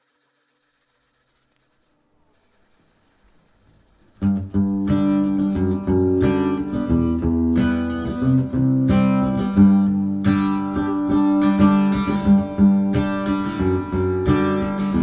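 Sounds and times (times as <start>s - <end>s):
strummed acoustic guitar: 4.2s - 15.0s.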